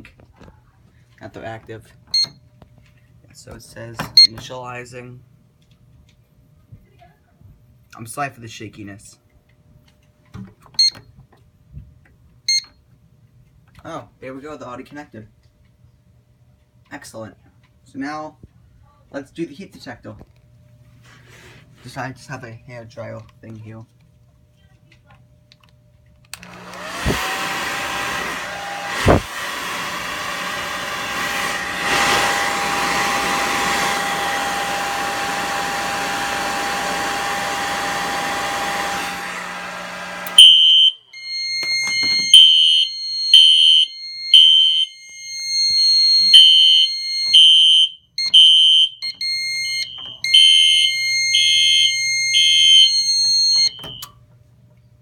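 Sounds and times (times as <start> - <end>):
hair dryer whining: 26.4 - 54.1
fire alarm horn pulsing: 30.4 - 54.1.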